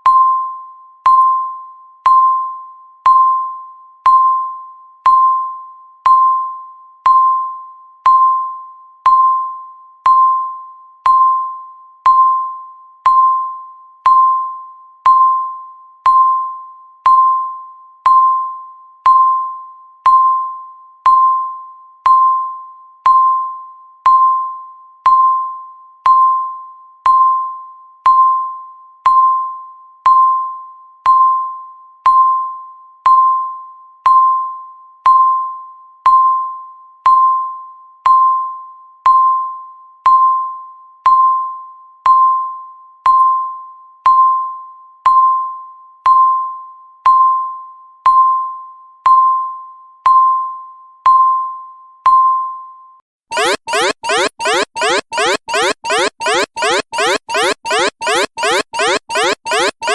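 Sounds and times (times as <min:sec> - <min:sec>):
timer beeping: 0:53.3 - 0:59.9.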